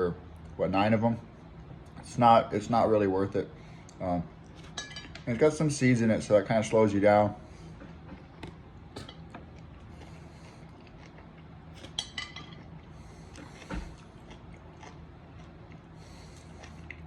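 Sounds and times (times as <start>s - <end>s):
person chewing: 7.8s - 17.0s.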